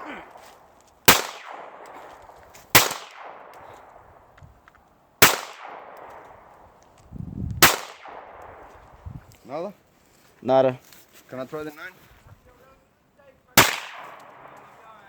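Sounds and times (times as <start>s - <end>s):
handgun shots with echo: 1.1s - 4.0s, 5.2s - 6.5s, 7.6s - 8.6s, 13.6s - 14.7s.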